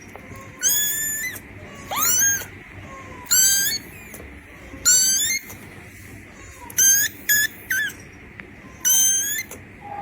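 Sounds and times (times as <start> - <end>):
kitten mewing: 0.5 - 2.6, 3.2 - 4.2, 4.8 - 5.6, 6.6 - 8.0, 8.8 - 9.6.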